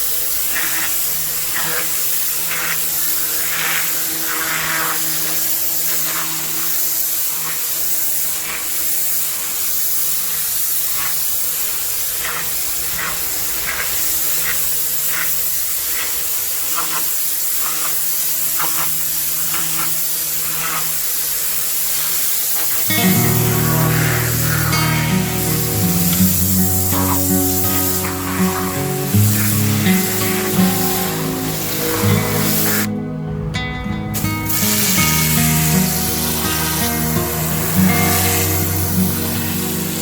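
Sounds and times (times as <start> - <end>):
pressure washer jet hissing: 0.0 - 32.9, 34.2 - 40.0
pump humming: 22.9 - 33.0, 34.2 - 40.0.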